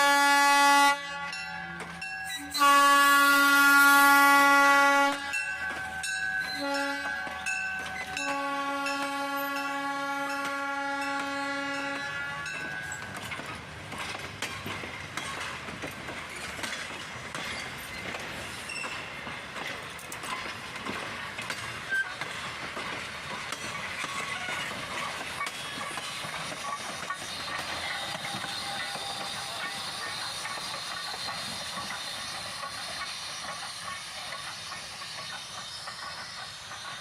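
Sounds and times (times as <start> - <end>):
steam locomotive whistle: 0.0 - 5.5, 6.5 - 12.7, 27.3 - 30.4
train wheels on rails: 0.0 - 37.0.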